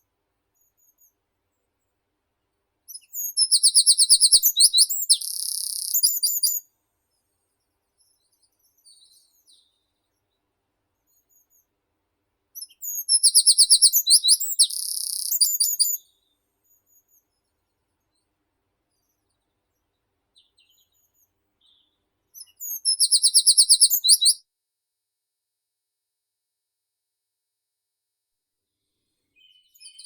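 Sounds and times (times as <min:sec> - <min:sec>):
songbird singing: 0:02.9 - 0:06.7, 0:12.6 - 0:17.4, 0:19.0 - 0:24.4, 0:29.3 - 0:30.0.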